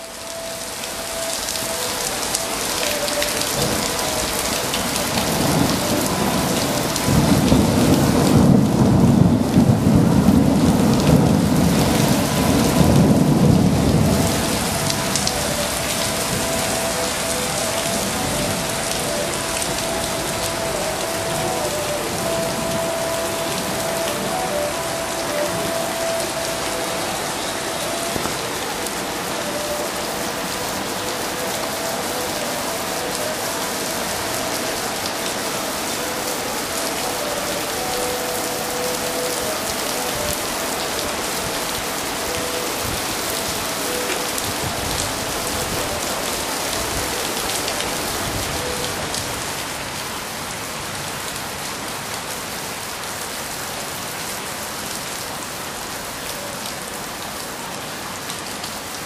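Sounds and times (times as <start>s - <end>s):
heavy rain on hard surfaces: 0.0s - 59.0s.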